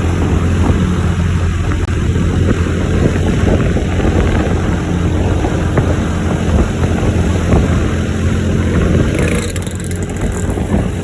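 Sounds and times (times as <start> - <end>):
bus engine humming: 0.0 - 11.0.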